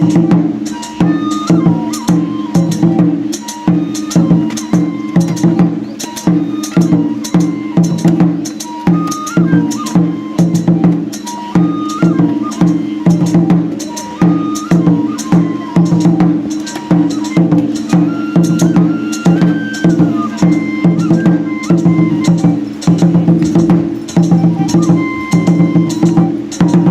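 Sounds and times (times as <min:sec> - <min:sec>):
thin high flute melody: 0:00.0 - 0:26.9
quick drum strikes: 0:15.4 - 0:26.9.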